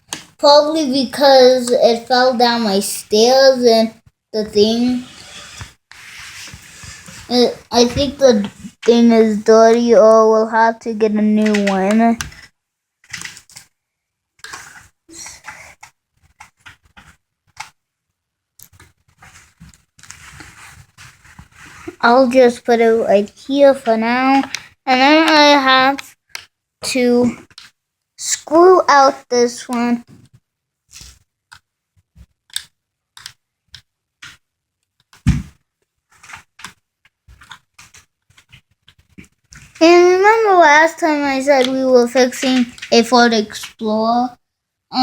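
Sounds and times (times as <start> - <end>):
clicks taps and scrapes: 14.4 - 17.8, 18.6 - 22.6, 23.2 - 26.6, 27.2 - 27.8, 29.7 - 39.9.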